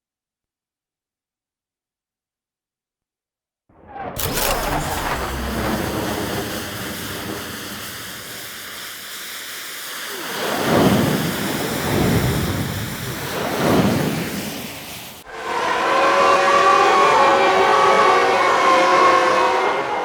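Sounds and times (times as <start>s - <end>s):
processed sci-fi roar: 4.2s - 7.8s, 15.3s - 20.0s.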